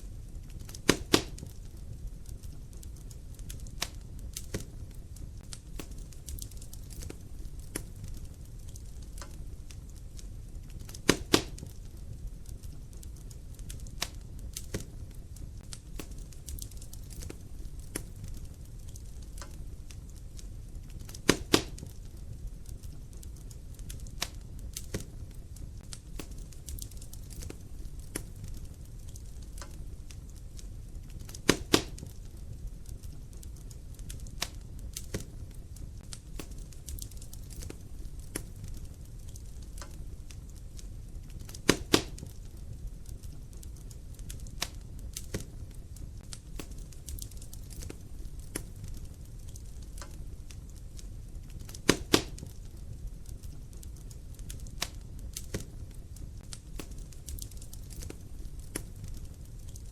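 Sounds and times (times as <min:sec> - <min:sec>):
low rumble of flames: 0:00.0 - 0:59.9
small fire crackles: 0:00.0 - 0:59.9
loud wood pops: 0:00.8 - 0:01.5, 0:21.2 - 0:21.9, 0:31.3 - 0:32.1, 0:41.5 - 0:42.3, 0:51.7 - 0:52.5.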